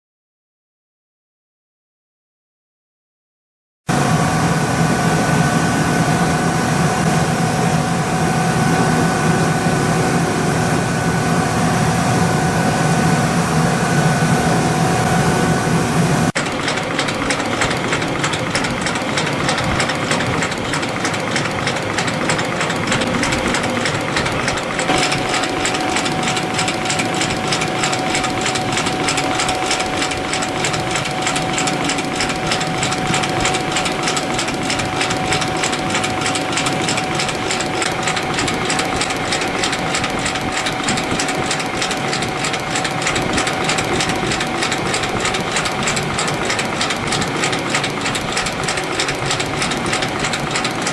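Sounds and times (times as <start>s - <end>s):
spring coiling machine ticking: 16.3s - 50.9s
steady tone: 17.3s - 36.4s.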